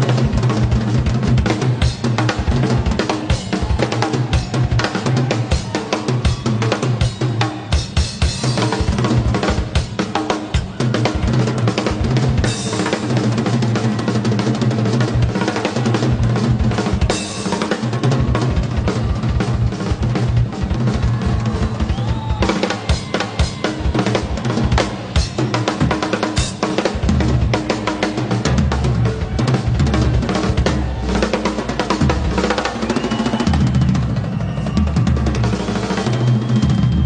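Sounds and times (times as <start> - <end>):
drum kit playing fast: 0.0 - 37.0
rock band playing live: 0.0 - 37.0.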